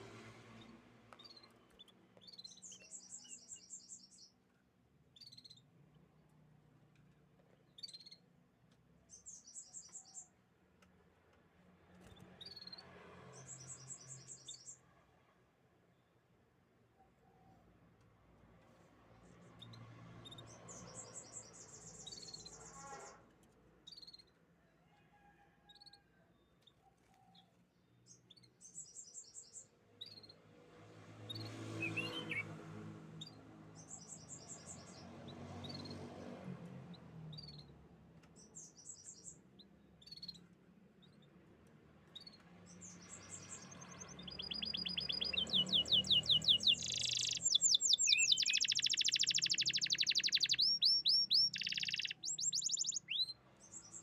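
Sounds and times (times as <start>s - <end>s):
canaries trilling: 20.2s - 23.2s, 31.3s - 32.6s, 42.2s - 54.0s.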